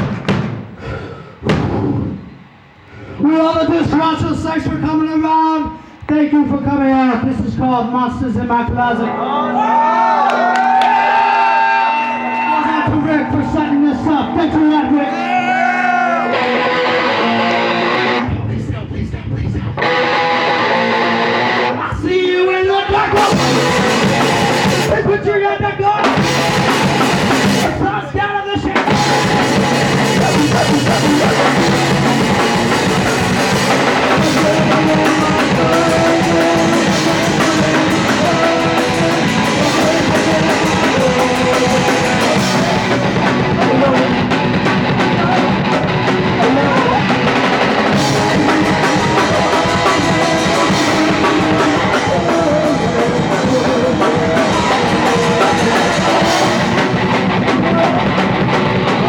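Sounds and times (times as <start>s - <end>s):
live punk rock band: 0.0s - 7.7s, 8.3s - 59.0s.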